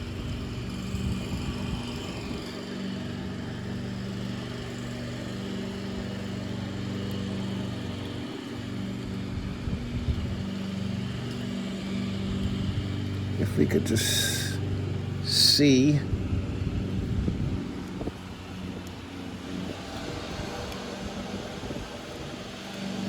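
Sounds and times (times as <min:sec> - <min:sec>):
engine droning: 0:00.0 - 0:23.0.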